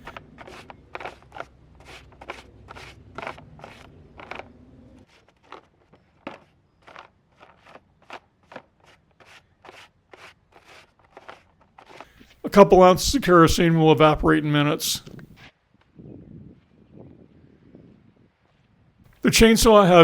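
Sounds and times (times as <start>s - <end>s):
brush scrubbing a chain: 0.0s - 12.2s.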